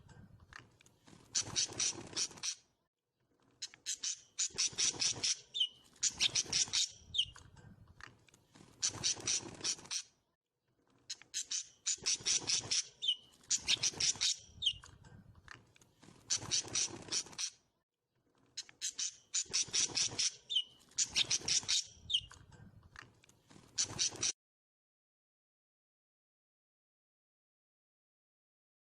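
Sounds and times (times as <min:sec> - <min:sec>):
cage birds chirping harshly: 0:00.5 - 0:02.7, 0:03.6 - 0:10.2, 0:11.1 - 0:17.6, 0:18.6 - 0:24.4.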